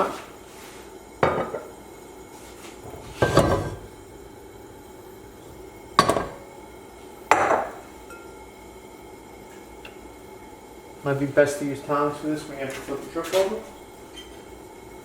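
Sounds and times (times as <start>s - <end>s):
cookware clattering on counter: 1.2s - 1.7s, 3.2s - 3.8s, 6.0s - 6.4s.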